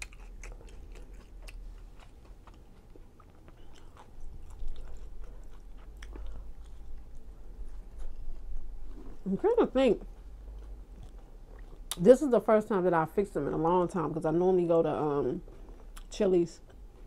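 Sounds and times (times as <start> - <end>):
person chewing food: 0.0 - 9.3, 10.0 - 12.0, 15.4 - 17.0.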